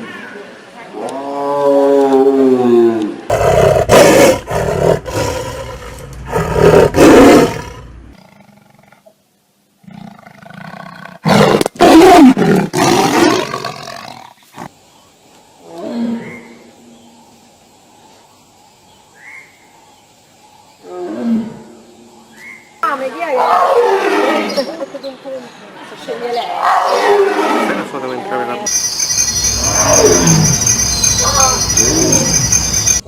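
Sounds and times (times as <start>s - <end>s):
big cat roaring: 0.9s - 9.1s, 26.6s - 27.9s, 29.6s - 32.9s.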